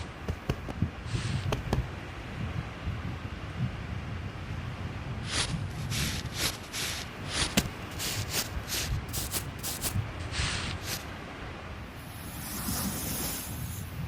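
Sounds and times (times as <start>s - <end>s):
sand scraped by hand: 5.2s - 11.1s, 12.0s - 14.0s.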